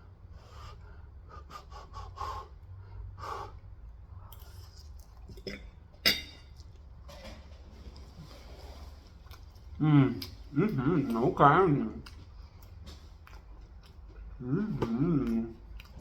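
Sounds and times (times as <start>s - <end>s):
breathing: 0.3s - 4.3s
close chewing sounds: 3.4s - 5.8s, 6.5s - 16.0s.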